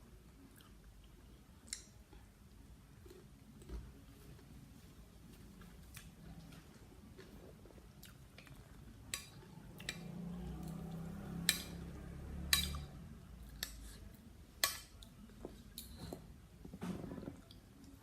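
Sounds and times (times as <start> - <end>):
cutlery clicking and clinking: 12.5 - 12.9.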